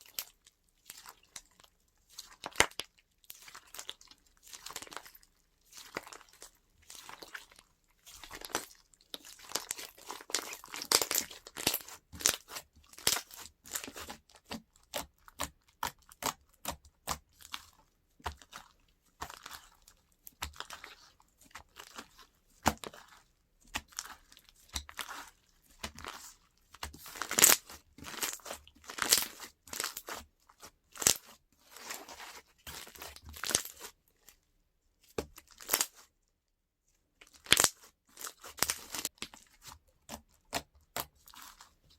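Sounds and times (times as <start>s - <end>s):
slime crackling and popping: 2.4s - 5.2s, 8.2s - 17.6s, 23.7s - 32.0s, 35.4s - 36.0s, 37.4s - 39.4s.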